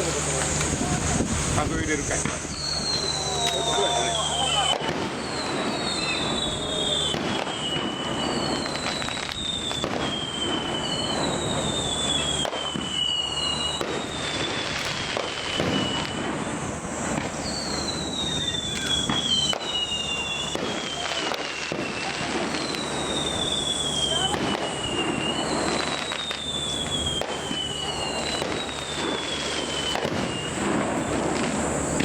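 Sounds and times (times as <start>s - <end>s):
steady rumble: 0.0s - 3.4s
firework bangs and crackling: 0.0s - 32.0s
firework whistle sliding down: 0.0s - 32.0s.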